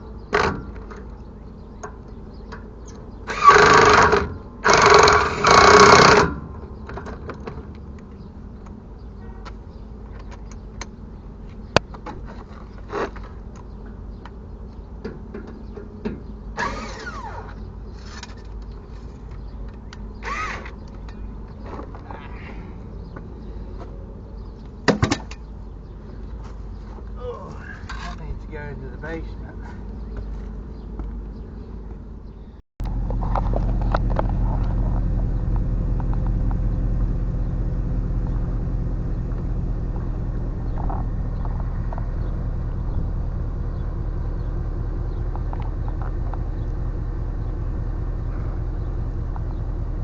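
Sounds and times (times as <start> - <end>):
power tool bursts: 3.3 - 6.4, 16.6 - 17.5, 20.2 - 20.7.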